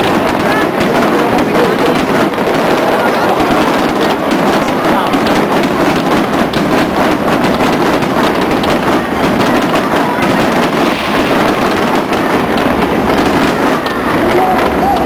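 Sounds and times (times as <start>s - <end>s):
fireworks bangs and crackling: 0.0s - 15.0s
steady rumble: 0.0s - 15.0s.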